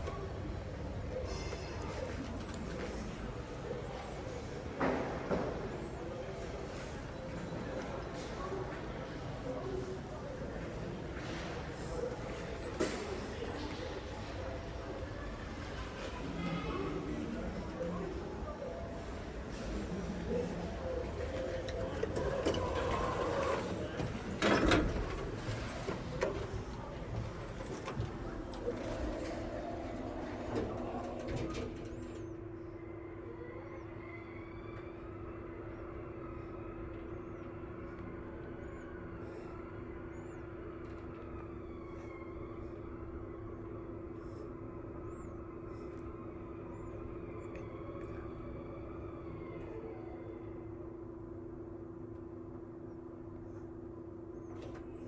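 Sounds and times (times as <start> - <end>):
elevator humming: 20.5 - 34.0
faint high squeaks: 20.9 - 32.5
elevator clunks: 20.9 - 32.7.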